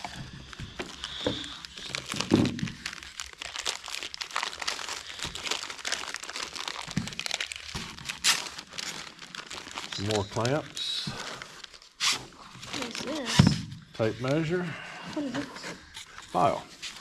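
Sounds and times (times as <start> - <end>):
packaging crinkling and rustling: 0.0 - 14.4, 15.0 - 17.0.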